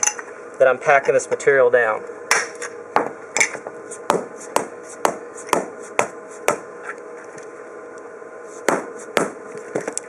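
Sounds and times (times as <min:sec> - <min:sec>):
hammer strikes: 0:04.1 - 0:06.6, 0:08.7 - 0:10.0.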